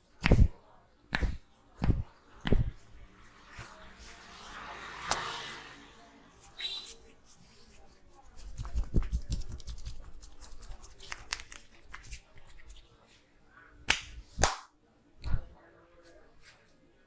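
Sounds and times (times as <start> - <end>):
hands rubbing and patting head: 6.4 - 12.9.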